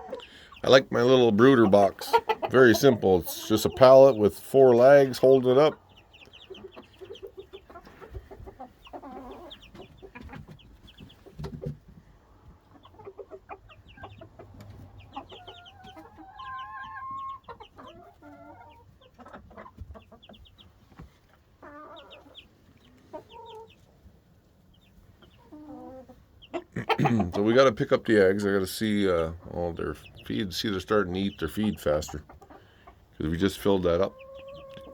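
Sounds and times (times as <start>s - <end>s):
chickens clucking: 0.0s - 34.9s
chicks peeping: 0.0s - 34.9s
chicken drawn-out call: 1.4s - 4.2s, 4.8s - 11.3s, 12.2s - 20.7s, 21.5s - 24.0s, 24.7s - 27.6s, 33.6s - 34.9s.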